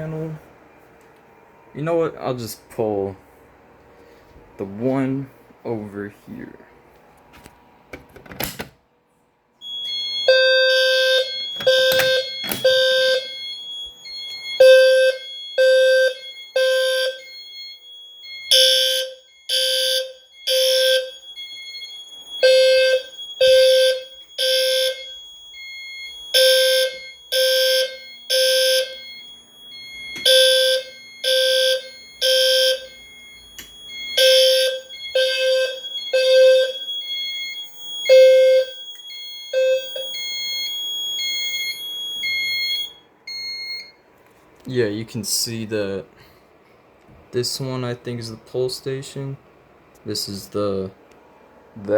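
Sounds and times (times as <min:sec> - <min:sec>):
fire alarm horns: 0:09.6 - 0:44.0.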